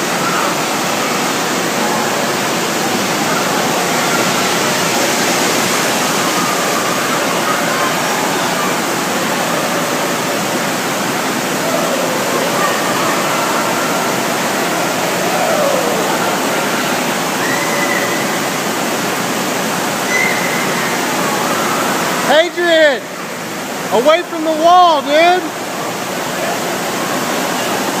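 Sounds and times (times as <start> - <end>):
running water rushing: 0.0 - 28.0.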